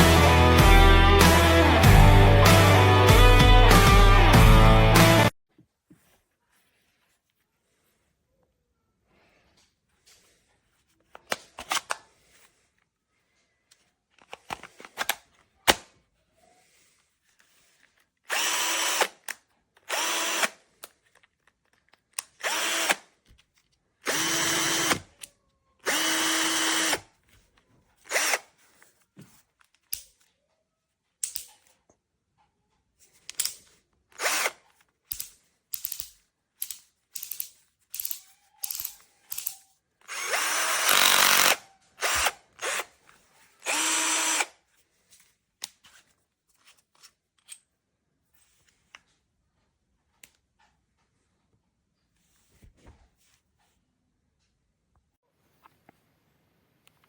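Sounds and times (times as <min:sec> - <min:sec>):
cordless drill motor whining: 0:18.3 - 0:19.1, 0:19.9 - 0:20.5, 0:22.4 - 0:23.0, 0:24.0 - 0:25.0, 0:25.8 - 0:27.0, 0:28.1 - 0:28.5, 0:34.2 - 0:34.5, 0:40.0 - 0:42.9, 0:43.6 - 0:44.5.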